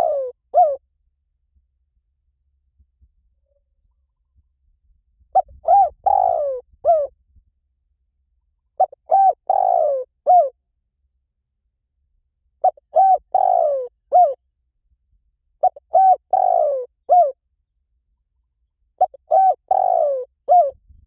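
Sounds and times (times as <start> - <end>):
dove cooing: 0.0 - 0.8, 5.3 - 7.1, 8.8 - 10.6, 12.6 - 14.4, 15.6 - 17.4, 19.0 - 20.8.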